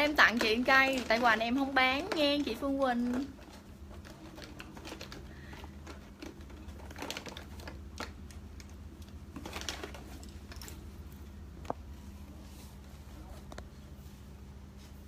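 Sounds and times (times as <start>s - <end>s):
small items clicking and rustling: 0.0s - 11.8s
steady low hum: 0.0s - 15.0s.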